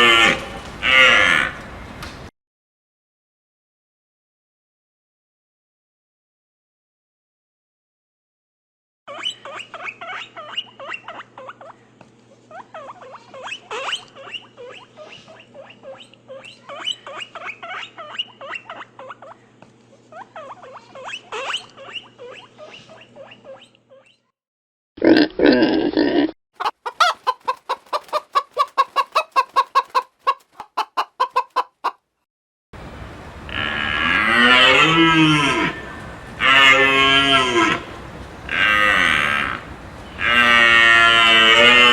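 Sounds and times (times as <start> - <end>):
squeaky animal calls: 0.0 - 1.6, 12.6 - 19.4, 33.4 - 41.9
rapid short animal calls: 26.6 - 31.6.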